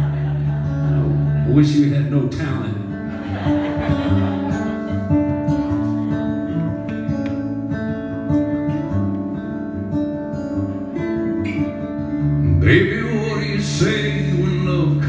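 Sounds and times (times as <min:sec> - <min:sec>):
acoustic guitar playing: 0:00.0 - 0:15.0.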